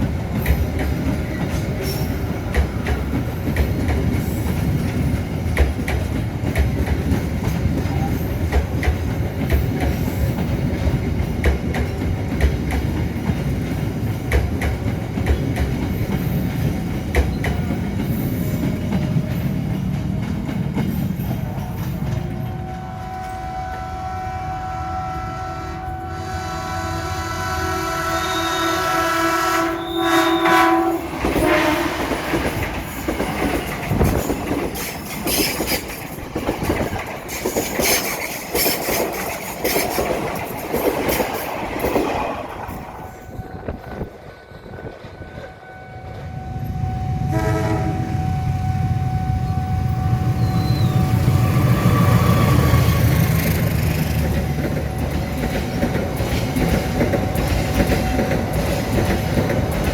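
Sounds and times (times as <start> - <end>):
train wheels clattering over rails: 0.0 - 23.4, 30.0 - 45.6, 50.7 - 59.9
low train rumble: 0.0 - 59.9
train horn: 22.4 - 32.3, 45.4 - 53.4.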